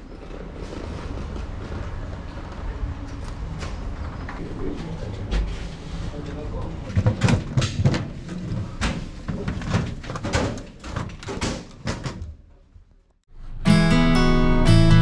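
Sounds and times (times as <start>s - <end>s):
acoustic guitar strumming: 13.5s - 15.0s.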